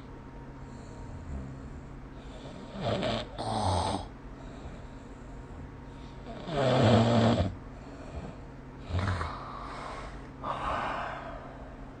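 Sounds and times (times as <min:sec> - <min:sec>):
person snoring: 0:00.8 - 0:04.1, 0:06.2 - 0:11.6
breathy exhale: 0:09.2 - 0:12.0.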